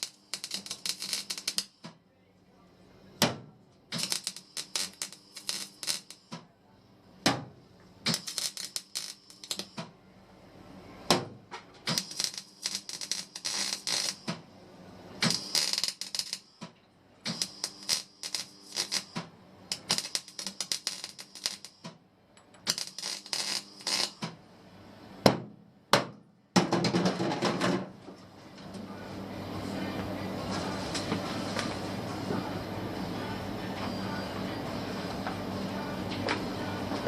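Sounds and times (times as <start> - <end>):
welding arc crackling: 0.0 - 2.0, 3.9 - 6.4, 8.0 - 9.9, 11.9 - 14.4, 15.2 - 22.0, 22.6 - 24.4.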